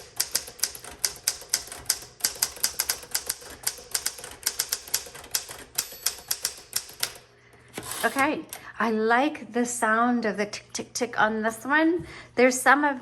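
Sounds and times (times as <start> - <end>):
manual typewriter typing: 0.0 - 8.5.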